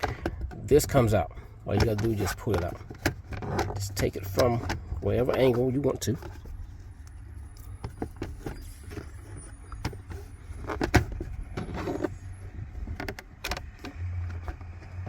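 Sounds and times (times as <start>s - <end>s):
plastic trim clicks and rattles: 0.0s - 6.5s.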